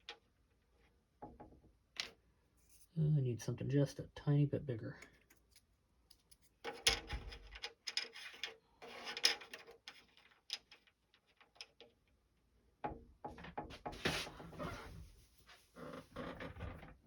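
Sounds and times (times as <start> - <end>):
small objects clicking and knocking: 5.1 - 12.0.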